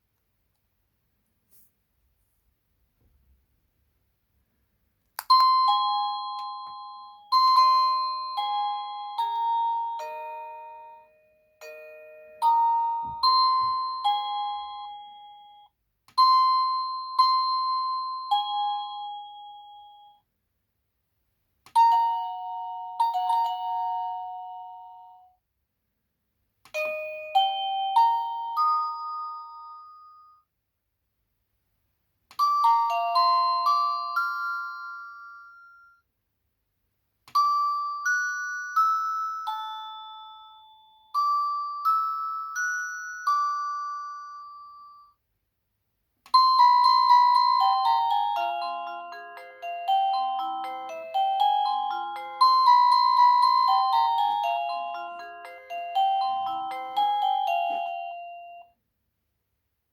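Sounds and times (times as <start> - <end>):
doorbell chime melodies: 5.3 - 20.2, 21.8 - 25.4, 26.8 - 30.5, 32.4 - 36.0, 37.3 - 45.2, 46.4 - 58.8.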